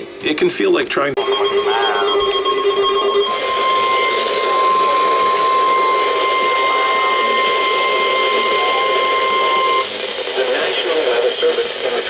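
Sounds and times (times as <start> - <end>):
loud single-pitched alarm beep: 1.2 - 9.8.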